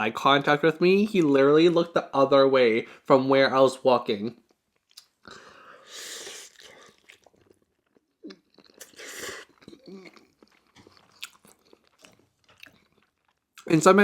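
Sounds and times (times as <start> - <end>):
chewing food crunches: 6.5 - 13.7.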